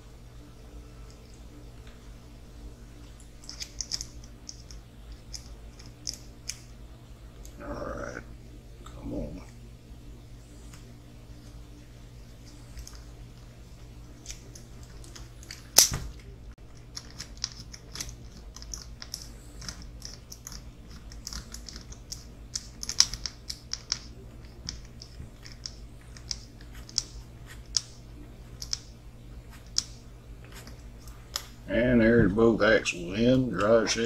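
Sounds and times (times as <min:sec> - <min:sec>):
small parts clicking and tapping: 0:03.2 - 0:06.7, 0:12.4 - 0:13.5, 0:14.1 - 0:31.6.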